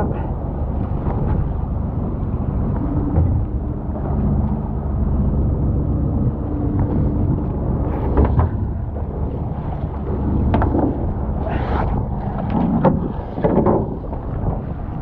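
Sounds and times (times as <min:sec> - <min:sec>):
boat engine rumbling: 0:00.0 - 0:15.0.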